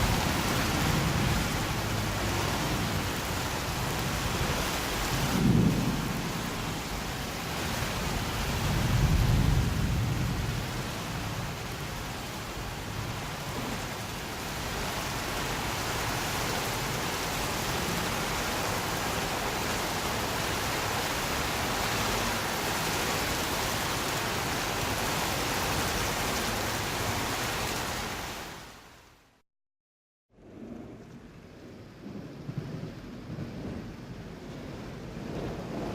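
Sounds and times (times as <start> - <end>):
thunder rumbling: 0.0 - 22.2, 30.4 - 35.9
steady rain falling: 0.0 - 29.4, 30.4 - 35.9.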